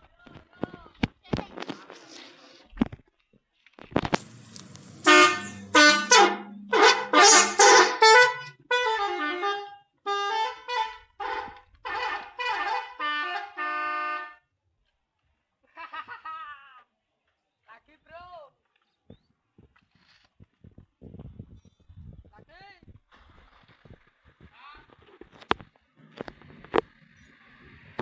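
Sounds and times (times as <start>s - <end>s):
bus musical horn playing tune: 4.4s - 14.4s.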